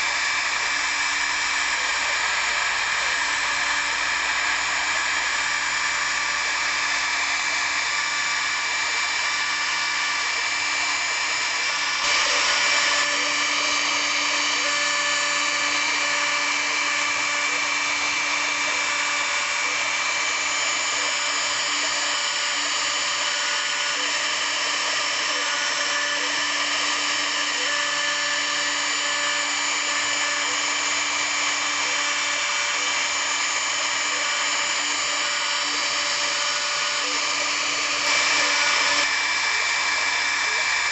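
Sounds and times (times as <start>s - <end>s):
router spindle whining: 0.0s - 40.9s.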